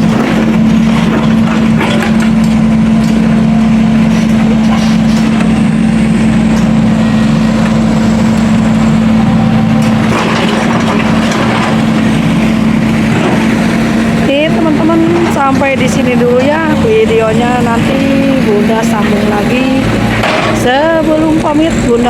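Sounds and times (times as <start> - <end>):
heavy machinery engine hum: 0.0 - 22.0
road material crunching and cracking: 0.0 - 22.0.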